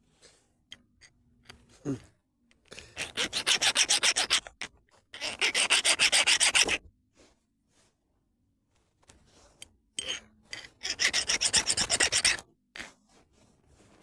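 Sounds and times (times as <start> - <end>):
file rasping on stone: 3.0 - 6.8, 9.6 - 13.4.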